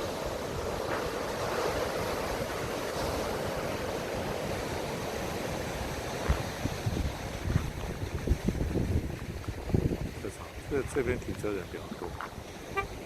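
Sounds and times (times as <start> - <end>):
ocean surf washing: 0.0 - 13.0
wind buffeting microphone: 0.0 - 13.0.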